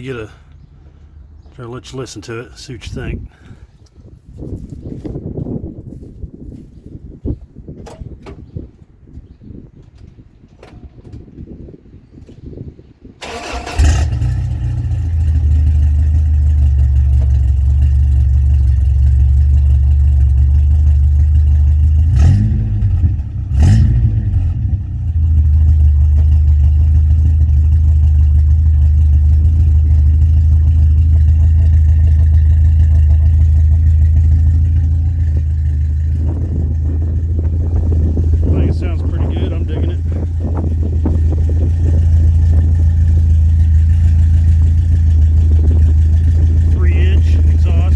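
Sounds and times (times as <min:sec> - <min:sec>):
car engine starting and idling: 0:09.6 - 0:47.9.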